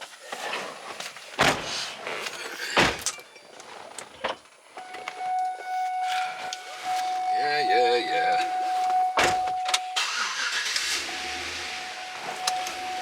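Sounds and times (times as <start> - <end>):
car doors shutting with thuds: 3.7 - 13.0
electronic chime tone: 4.8 - 10.3, 10.9 - 13.0.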